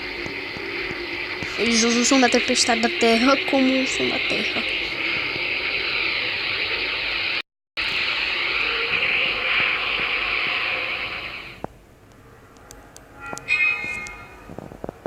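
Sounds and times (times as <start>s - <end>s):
steady rushing hiss: 0.0s - 11.9s.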